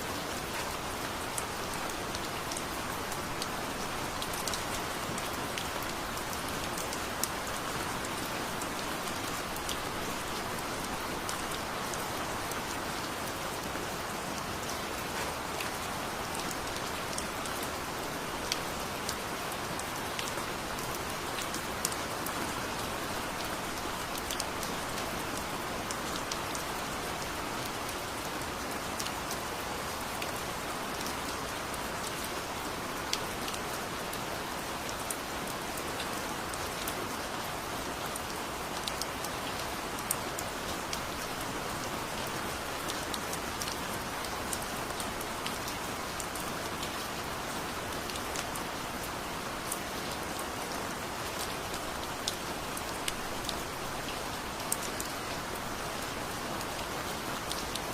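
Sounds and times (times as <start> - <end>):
heavy rain falling: 0.0 - 57.9.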